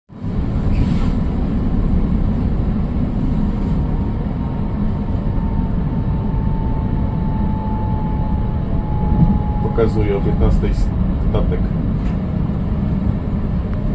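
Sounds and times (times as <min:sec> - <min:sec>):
vehicle rumble: 0:00.1 - 0:13.9
faint high whine: 0:05.4 - 0:10.9.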